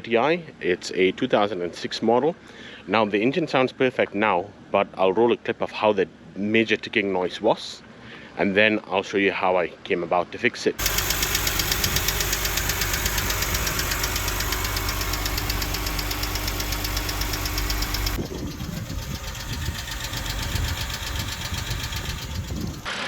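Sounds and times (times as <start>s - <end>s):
car engine idling: 10.8s - 22.9s
rapid valve ticking: 10.8s - 22.9s.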